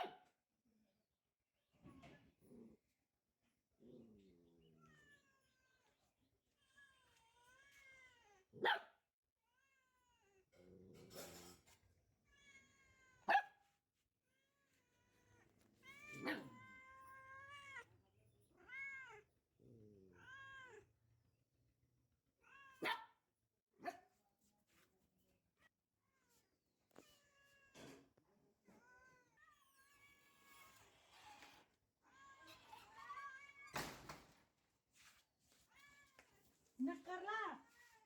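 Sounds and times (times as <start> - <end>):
cat yowling and meowing: 14.9 - 17.9, 18.6 - 19.3, 20.1 - 20.9.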